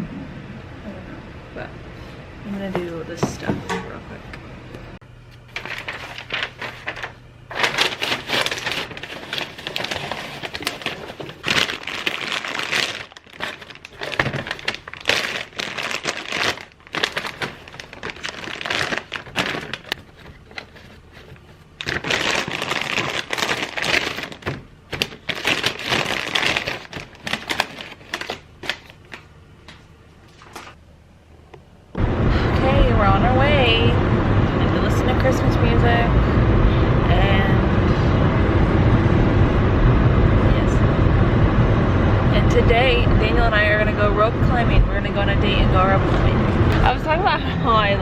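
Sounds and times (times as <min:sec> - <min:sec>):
paper crinkling and rustling: 0:05.4 - 0:30.8.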